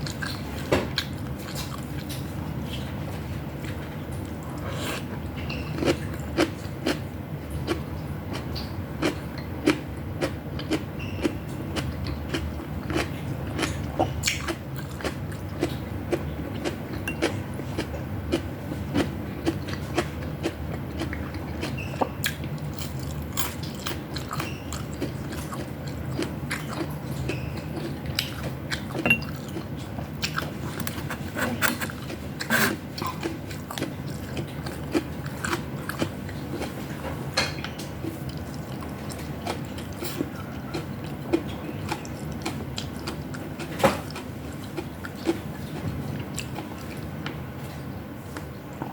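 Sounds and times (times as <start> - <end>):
steady low hum: 0.0 - 48.9
person chewing and biting food: 7.7 - 37.0.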